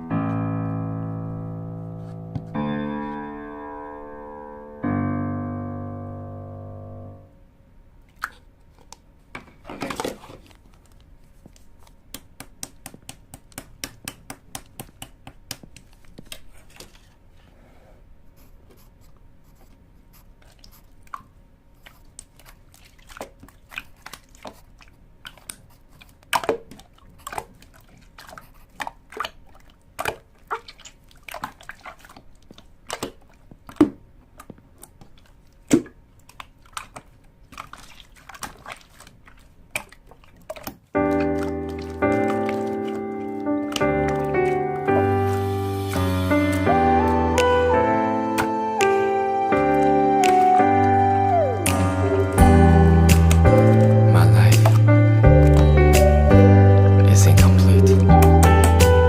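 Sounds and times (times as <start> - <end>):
sharp clicks and taps: 12.1 - 16.4.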